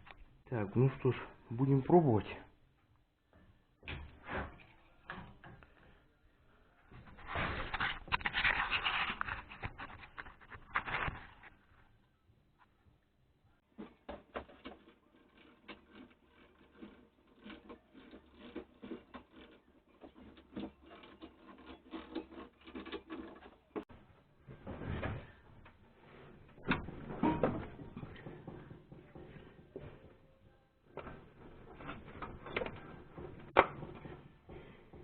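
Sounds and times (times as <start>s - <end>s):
metal scraping rasps: 6.9s - 11.7s, 13.8s - 30.3s, 30.9s - 35.0s.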